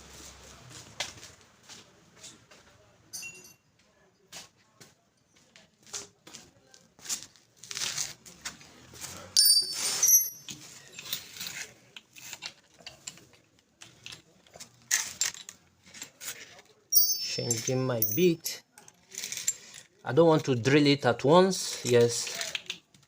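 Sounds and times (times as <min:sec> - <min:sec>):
ringing metal jangle: 0:03.1 - 0:03.6, 0:09.4 - 0:11.3, 0:16.9 - 0:18.6
drill bits clicking and clinking: 0:16.9 - 0:19.9.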